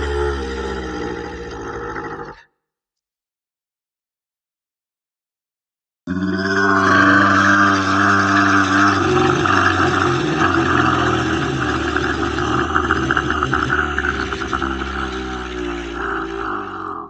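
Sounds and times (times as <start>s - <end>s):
deep guttural monster growl: 0.0s - 2.5s, 6.1s - 17.0s.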